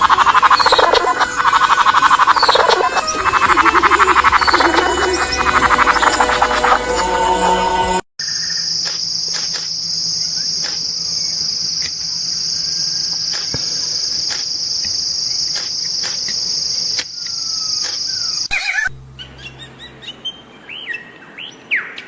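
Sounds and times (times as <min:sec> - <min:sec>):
cricket trilling: 0:00.0 - 0:07.0, 0:08.2 - 0:18.6
frog chorus: 0:00.0 - 0:07.5.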